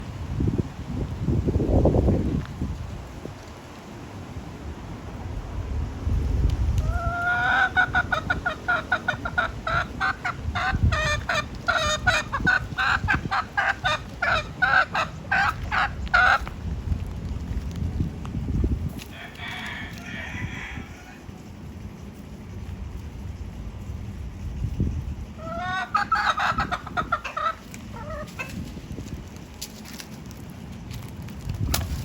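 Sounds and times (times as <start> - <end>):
hen calling: 6.8 - 16.4, 25.4 - 28.6
hen clucking: 6.8 - 16.5, 25.2 - 28.8.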